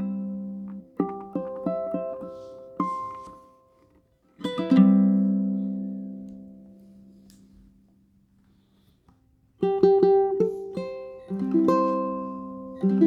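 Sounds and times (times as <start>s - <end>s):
ukulele chords strummed: 0.0s - 3.7s, 4.4s - 6.9s, 9.6s - 13.0s.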